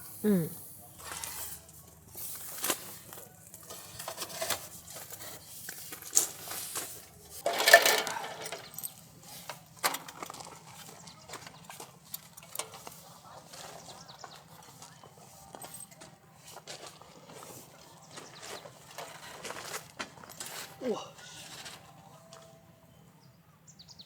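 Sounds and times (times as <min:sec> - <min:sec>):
scraping rustle: 0:00.8 - 0:22.5
metal parts clinking: 0:03.5 - 0:12.8, 0:18.4 - 0:20.8, 0:21.4 - 0:22.0.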